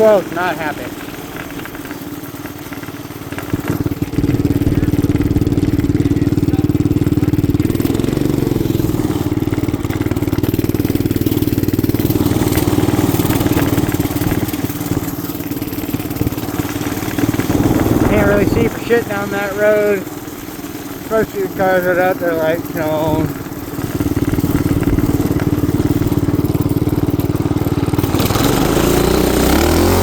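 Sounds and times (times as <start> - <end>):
motorbike engine running: 0.0 - 30.0.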